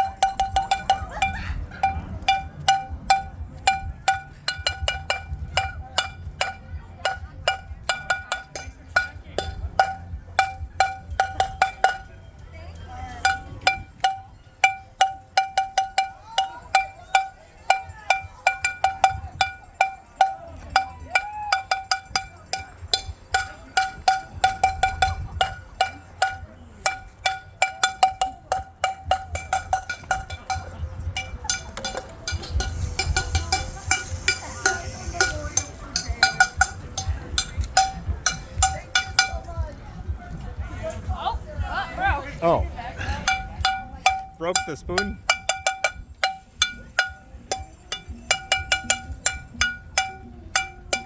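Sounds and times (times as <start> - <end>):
cowbell struck with spoon: 0.0 - 39.5, 43.2 - 51.0.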